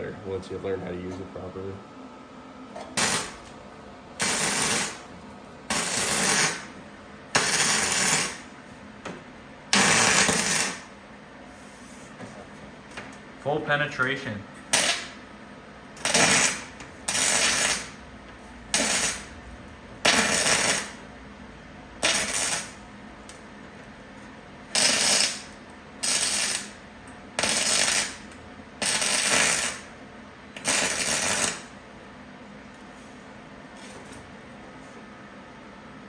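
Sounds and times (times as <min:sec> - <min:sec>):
welding arc crackling: 0:03.0 - 0:03.5, 0:04.2 - 0:05.1, 0:05.7 - 0:06.7, 0:07.4 - 0:08.5, 0:09.7 - 0:10.9, 0:14.7 - 0:15.2, 0:16.0 - 0:18.0, 0:18.7 - 0:19.3, 0:20.0 - 0:21.0, 0:22.0 - 0:22.8, 0:24.7 - 0:26.8, 0:27.4 - 0:29.9, 0:30.6 - 0:31.7.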